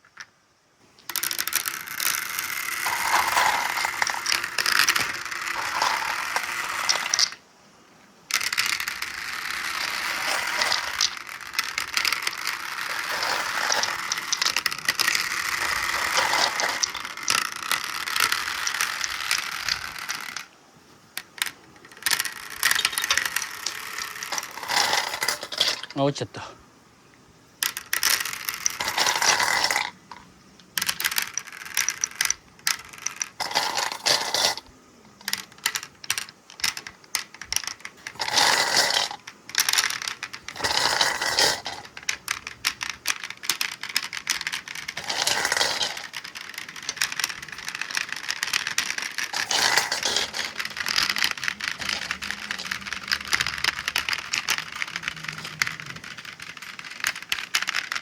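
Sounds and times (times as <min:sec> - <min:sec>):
marbles rattling down steel ramps: 0:01.0 - 0:07.4, 0:08.3 - 0:20.6, 0:21.2 - 0:26.5, 0:27.6 - 0:58.0.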